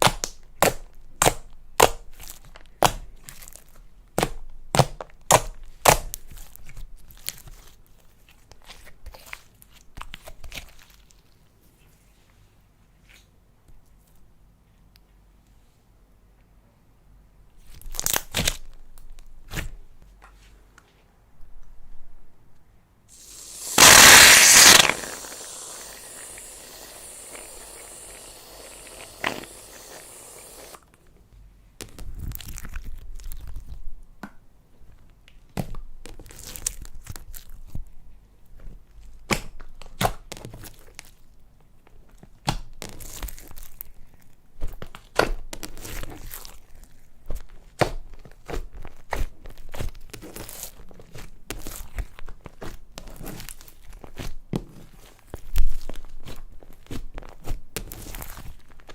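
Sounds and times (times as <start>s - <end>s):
loud rustling burst: 23.2s - 30.8s
slime crackling and tearing: 23.2s - 30.8s.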